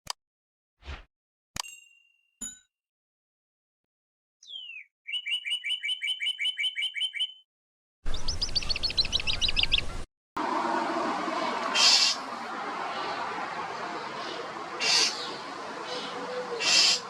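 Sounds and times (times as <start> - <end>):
starling whistle and chirps: 4.4 - 7.4, 11.7 - 17.0.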